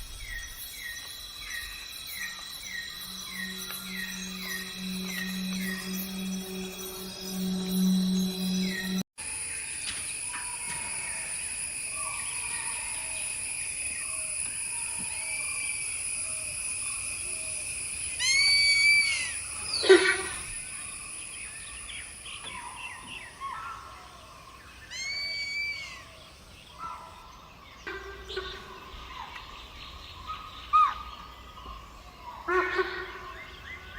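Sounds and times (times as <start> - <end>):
high-pitched insect drone: 0.0 - 26.2.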